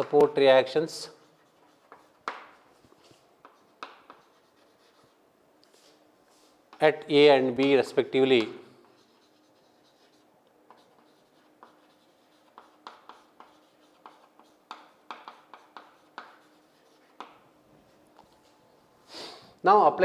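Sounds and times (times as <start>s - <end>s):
handwriting strokes and taps: 1.3s - 5.1s, 7.6s - 17.5s.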